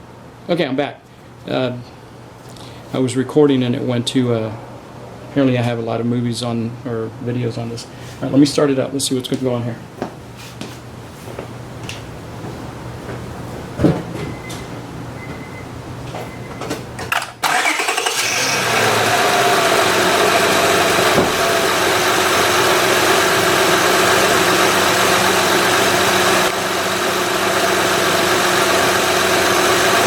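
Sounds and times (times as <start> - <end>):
car engine starting and idling: 17.0 - 30.0.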